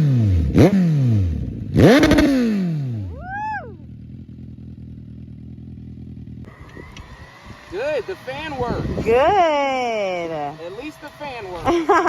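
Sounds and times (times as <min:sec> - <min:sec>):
motorcycle engine revving and idling: 0:00.0 - 0:12.0
cooling fan whirring: 0:06.5 - 0:12.0.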